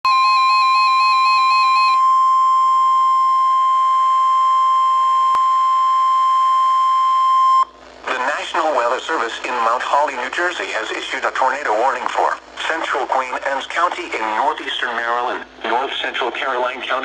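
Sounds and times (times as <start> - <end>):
loud steady alarm tone: 0.0 - 7.7.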